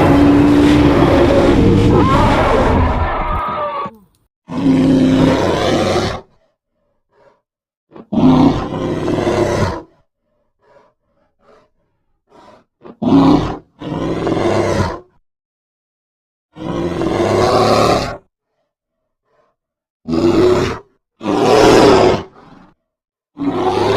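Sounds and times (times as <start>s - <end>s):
monster roar: 0.0s - 6.3s, 8.0s - 10.0s, 20.1s - 22.8s, 23.4s - 23.9s.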